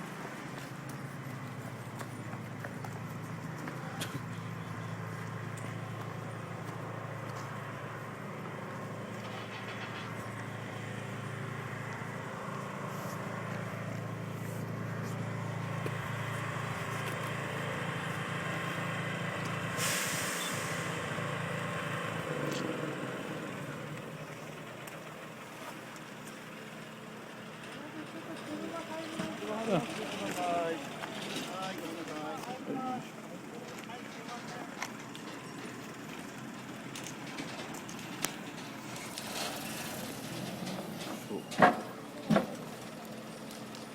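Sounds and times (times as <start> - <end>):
diesel engine humming: 0.0 - 43.9
air hiss burst: 19.8 - 21.0.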